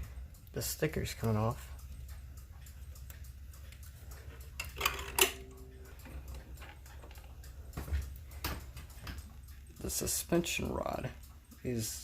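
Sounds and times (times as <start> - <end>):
wall clock ticking: 0.0 - 12.0
low hum: 1.6 - 9.8.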